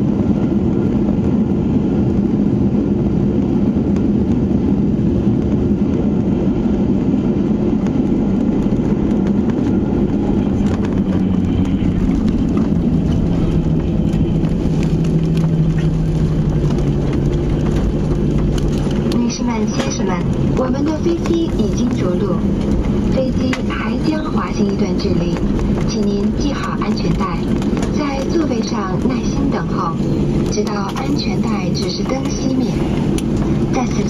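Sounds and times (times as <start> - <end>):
airplane cabin engine roar: 0.0 - 34.0.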